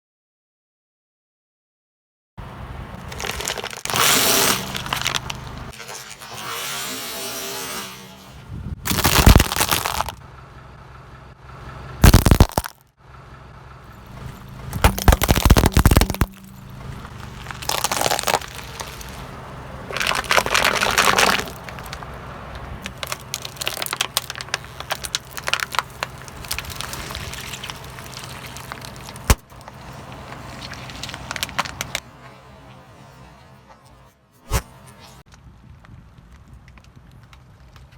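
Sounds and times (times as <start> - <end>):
car engine hum: 2.4 - 37.9
tyres crushing brittle objects: 3.0 - 7.8, 8.9 - 10.2, 12.0 - 12.8, 14.2 - 32.0.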